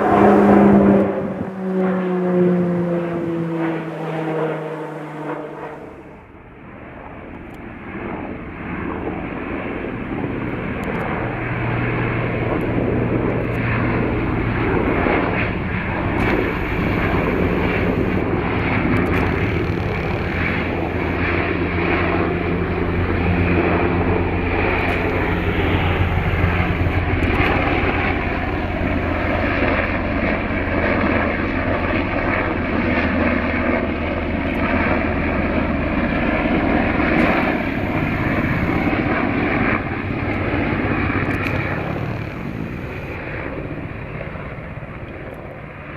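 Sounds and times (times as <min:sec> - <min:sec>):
aircraft engines humming: 0:00.0 - 0:45.9.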